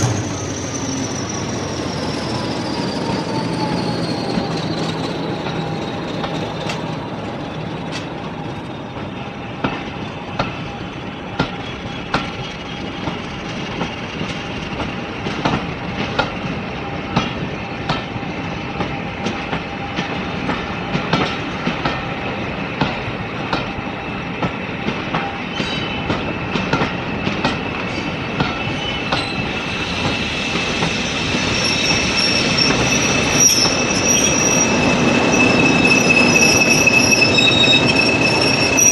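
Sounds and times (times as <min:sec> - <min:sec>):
high wheel squeal: 0:00.0 - 0:09.6, 0:27.8 - 0:38.9
train wheels clickety-clack: 0:00.0 - 0:38.9.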